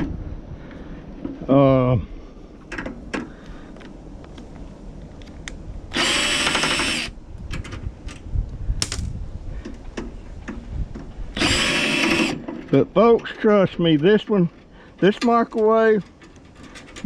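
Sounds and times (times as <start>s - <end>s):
power drill running: 5.9s - 7.2s, 11.4s - 12.4s
handling clicks and knocks: 12.3s - 17.0s.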